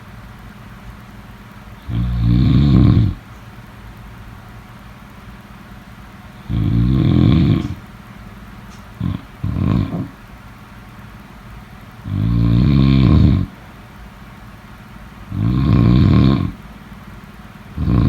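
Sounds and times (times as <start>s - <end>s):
person snoring: 1.8s - 3.2s, 6.4s - 7.8s, 9.0s - 10.2s, 12.1s - 13.6s, 15.3s - 16.6s, 17.8s - 18.0s.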